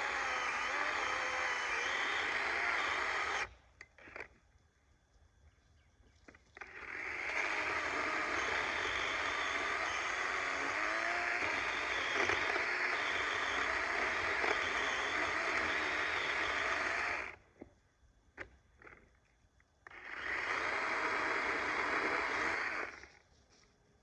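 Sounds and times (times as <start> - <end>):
electric chainsaw cutting wood: 0.0 - 4.3, 6.6 - 17.4, 19.9 - 23.1.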